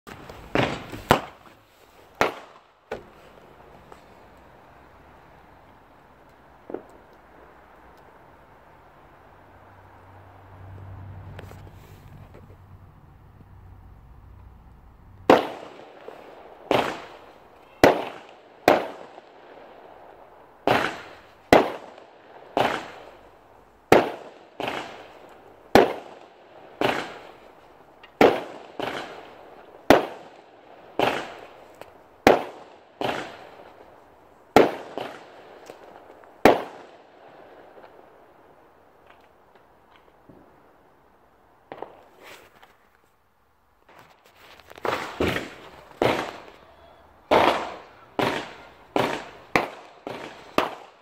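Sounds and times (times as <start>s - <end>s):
firework bangs echoing: 0.1s - 1.5s, 2.1s - 3.3s, 15.2s - 38.2s, 44.8s - 51.0s.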